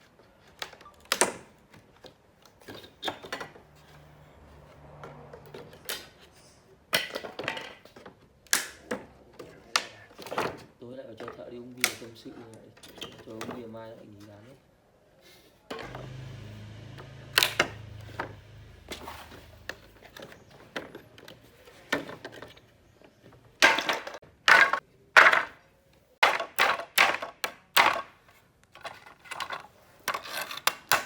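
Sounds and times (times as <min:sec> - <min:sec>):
low machine hum: 0:15.8 - 0:19.9.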